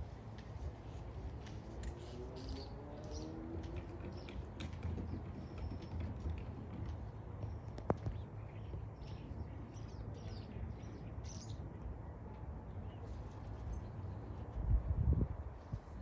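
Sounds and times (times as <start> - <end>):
small birds chirping: 1.8 - 11.9.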